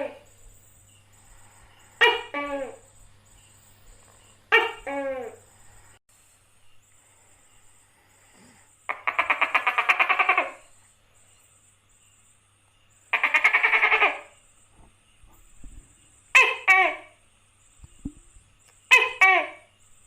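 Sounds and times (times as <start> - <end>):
gecko calling: 0.0 - 6.0, 8.1 - 11.5, 13.0 - 14.8, 15.4 - 19.8.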